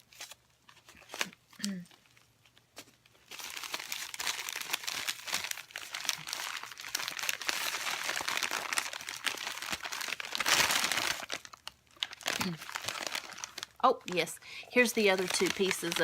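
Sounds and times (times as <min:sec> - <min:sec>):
packing wrap crinkling: 0:00.0 - 0:16.0.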